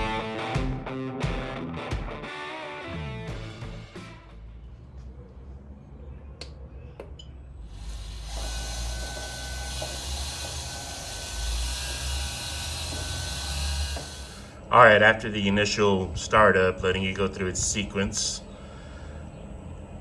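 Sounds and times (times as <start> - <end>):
grill fan hissing: 7.6 - 20.0.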